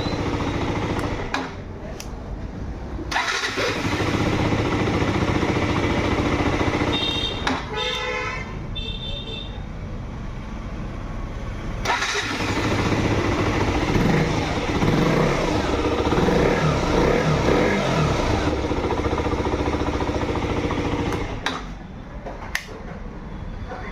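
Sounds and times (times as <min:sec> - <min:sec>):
motorcycle engine revving: 0:03.1 - 0:07.3, 0:11.8 - 0:21.5.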